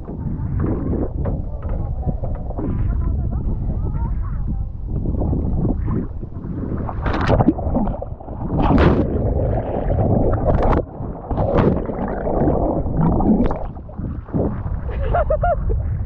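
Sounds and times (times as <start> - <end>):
steady low rumble: 0.0 - 16.0
water splashing around kayak: 4.9 - 16.0.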